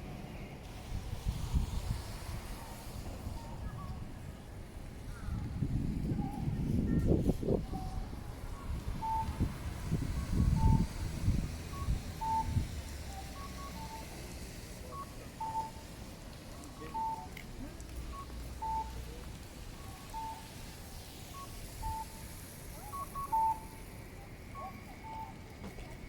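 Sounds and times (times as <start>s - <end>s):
two-note crossing signal beeps: 9.0s - 9.4s, 11.8s - 12.7s, 13.4s - 14.2s.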